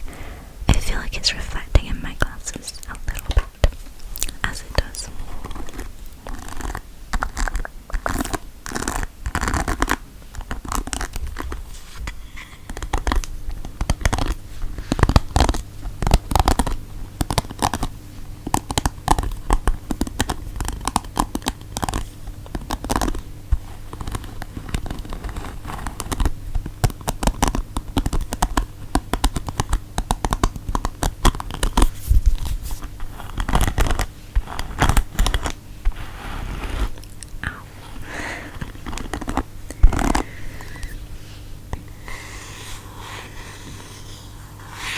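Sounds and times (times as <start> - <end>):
objects being scratched: 31.5 - 37.2.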